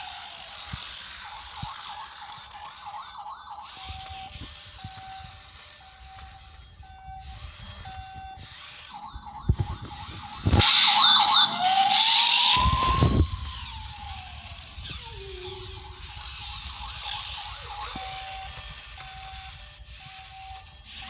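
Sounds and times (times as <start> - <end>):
siren-like electronic warbling: 0.0 - 21.0
short electronic beeps: 1.3 - 13.4.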